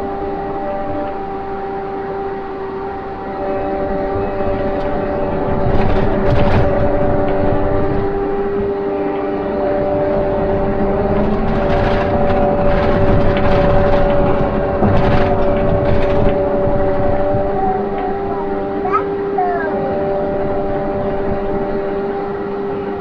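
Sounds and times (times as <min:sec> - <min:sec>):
rumbling noise: 0:00.0 - 0:23.0
vehicle engine running: 0:00.0 - 0:23.0
short rattles: 0:04.2 - 0:08.7, 0:10.1 - 0:19.3.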